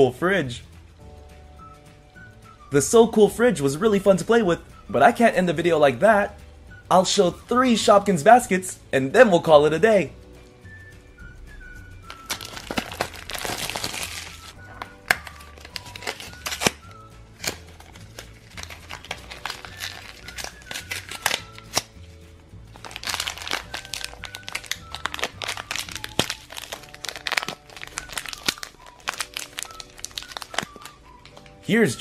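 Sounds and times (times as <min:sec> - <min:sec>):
background music with bass: 0:00.0 - 0:32.0
plastic packaging crinkling: 0:12.1 - 0:21.9, 0:22.7 - 0:31.6.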